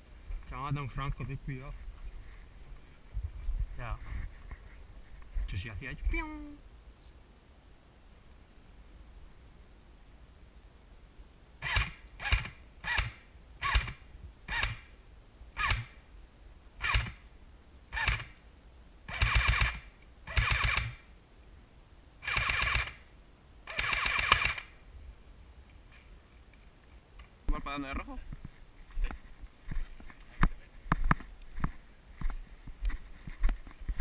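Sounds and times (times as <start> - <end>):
airsoft gun shots: 11.6 - 14.9, 15.6 - 16.0, 16.8 - 17.2, 17.9 - 18.4, 19.1 - 21.1, 22.2 - 23.0, 23.7 - 24.8.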